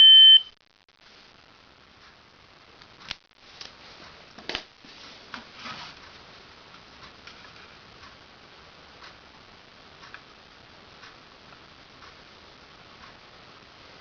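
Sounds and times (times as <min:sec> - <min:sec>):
faint irregular ticking: 0:06.0 - 0:13.7.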